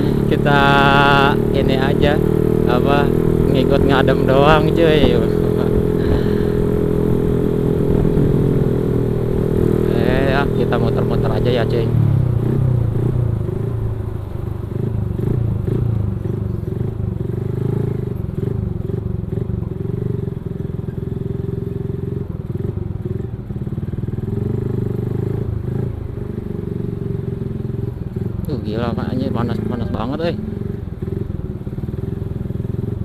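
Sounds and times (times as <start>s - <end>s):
motorcycle engine running: 0.0s - 33.0s.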